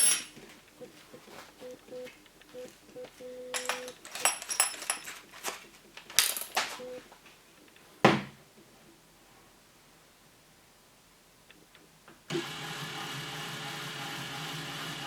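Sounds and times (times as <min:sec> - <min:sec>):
metallic clinks of tool parts: 0:00.0 - 0:00.3, 0:03.5 - 0:05.2, 0:06.2 - 0:06.8
dull thump: 0:08.0 - 0:08.4.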